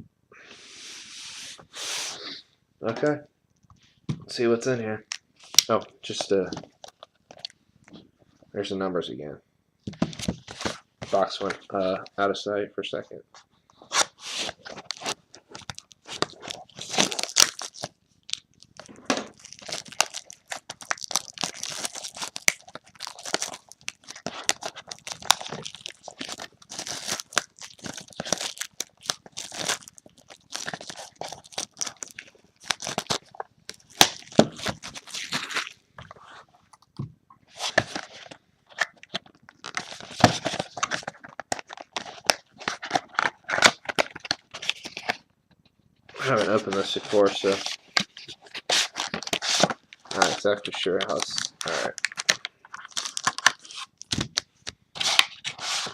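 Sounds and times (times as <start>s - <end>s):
plastic wrap tearing and crinkling: 13.9s - 36.3s, 37.5s - 45.2s, 46.1s - 55.9s.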